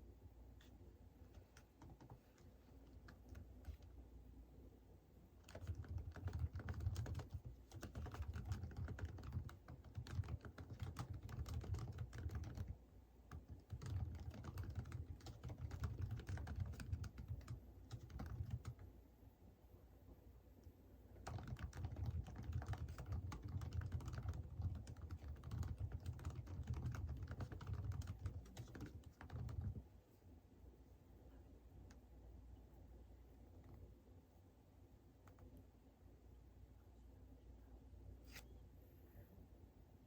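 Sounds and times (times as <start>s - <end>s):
typing on computer keyboard: 1.3s - 3.9s, 5.4s - 18.9s, 21.2s - 29.8s.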